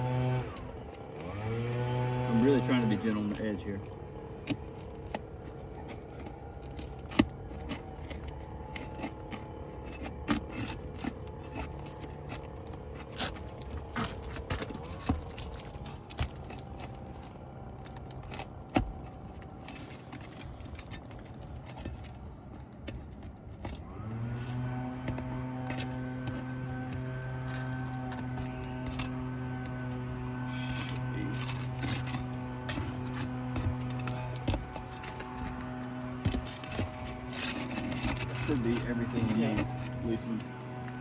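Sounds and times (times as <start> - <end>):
pry tool scraping shingles: 0.0 - 41.0
shingles pulling apart: 0.0 - 41.0
steady low hum: 0.0 - 41.0.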